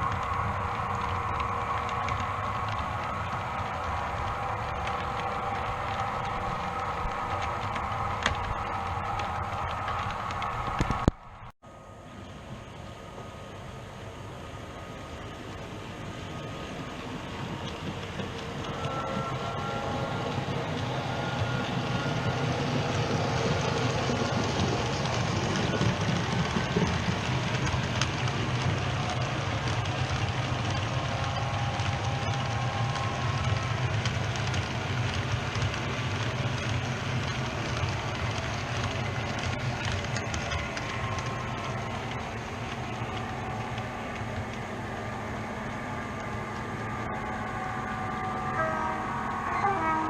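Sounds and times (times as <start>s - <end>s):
wheels rolling over track: 0.0s - 11.5s, 15.5s - 48.7s.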